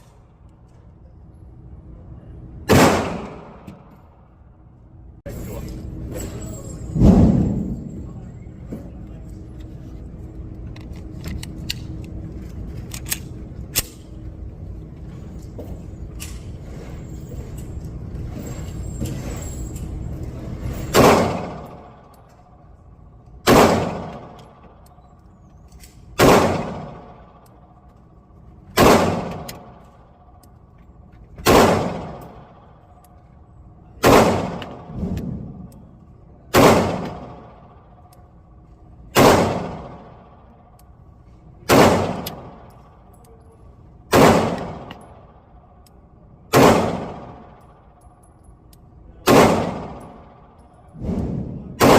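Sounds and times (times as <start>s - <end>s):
low background noise: 0.0s - 51.9s
pistol shots with echo: 2.7s - 3.8s, 20.9s - 22.1s, 23.4s - 24.8s, 26.2s - 27.5s, 28.7s - 29.8s, 31.4s - 32.8s, 34.0s - 35.6s, 36.5s - 38.0s, 39.1s - 40.5s, 41.6s - 42.7s, 44.1s - 45.4s, 46.5s - 47.9s, 49.2s - 51.9s.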